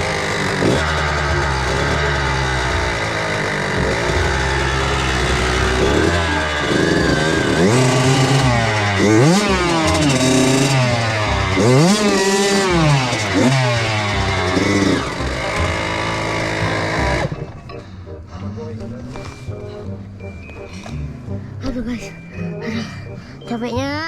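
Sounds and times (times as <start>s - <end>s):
motocross engine revving: 0.0s - 17.6s.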